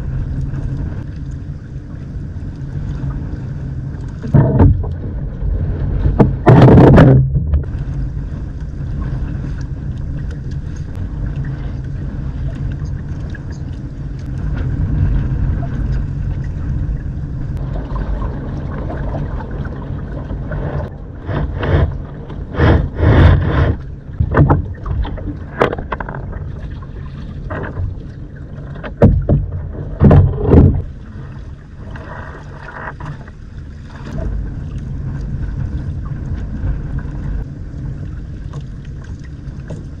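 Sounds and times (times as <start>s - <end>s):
loud knocks and thumps: 4.3s - 4.9s, 6.1s - 7.7s, 22.6s - 24.8s, 28.9s - 30.9s.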